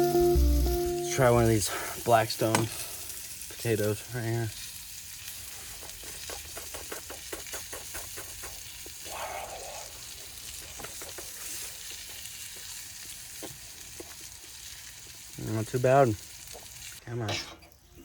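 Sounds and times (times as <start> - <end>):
potatoes sizzling on griddle: 0.0 - 17.0
crackling pops: 2.1 - 2.9, 5.7 - 9.0, 10.2 - 14.5.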